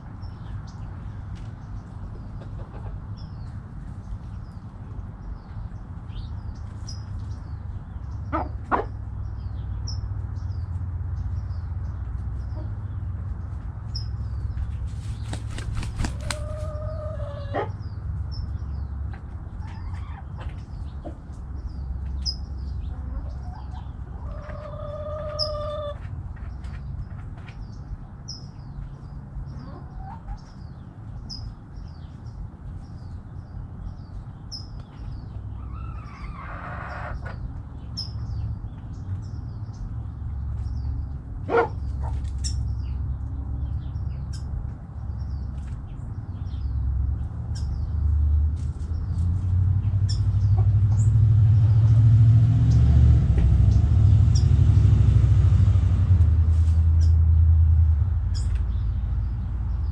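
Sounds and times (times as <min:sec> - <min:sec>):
chickens calling: 0:02.1 - 0:03.6, 0:14.6 - 0:17.8, 0:19.1 - 0:21.4, 0:22.9 - 0:26.8, 0:29.5 - 0:30.6, 0:34.8 - 0:38.0, 0:41.4 - 0:42.7, 0:50.1 - 0:51.1
small bird chirping: 0:13.9 - 0:18.9, 0:33.9 - 0:40.0, 0:47.5 - 0:48.0, 0:50.0 - 0:51.1, 0:57.0 - 0:57.2, 0:58.3 - 0:59.9
low rumble: 0:48.6 - 0:59.9.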